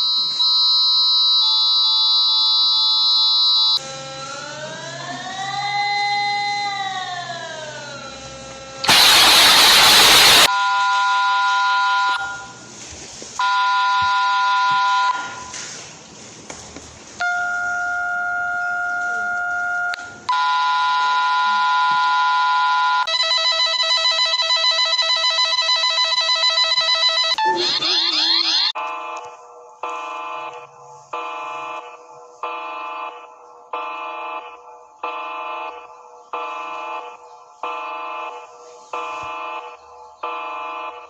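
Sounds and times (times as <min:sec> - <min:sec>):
electronic alarm chords: 0:01.4 - 0:05.0, 0:08.1 - 0:10.7, 0:21.8 - 0:41.0
noise burst: 0:08.2 - 0:10.5, 0:27.4 - 0:41.0
fast pulsing tone: 0:27.4 - 0:28.8
rising sweeping tones: 0:27.4 - 0:28.8.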